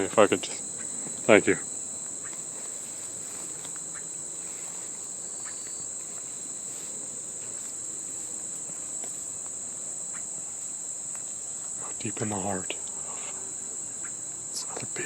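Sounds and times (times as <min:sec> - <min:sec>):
insects droning: 0:00.0 - 0:15.0
faint ticks: 0:02.0 - 0:07.7.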